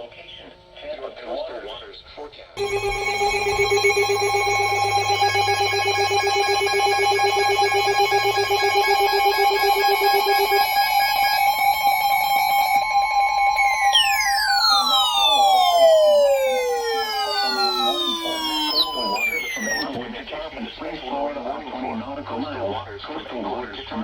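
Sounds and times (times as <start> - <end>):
electronic siren tone: 2.6 - 20.0.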